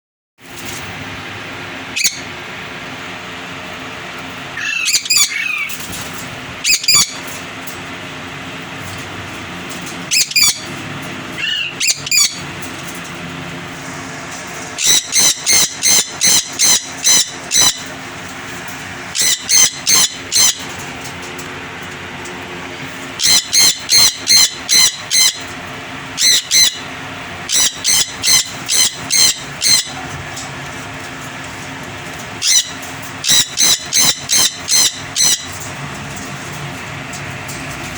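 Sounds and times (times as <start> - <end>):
steady background hum: 0.4 - 37.9
parrots squawking: 2.0 - 2.3, 4.6 - 5.8, 6.6 - 7.2, 10.1 - 10.8, 11.4 - 12.5, 14.8 - 18.0, 19.1 - 20.8, 23.2 - 25.5, 26.2 - 26.9, 27.5 - 30.2, 32.4 - 35.6.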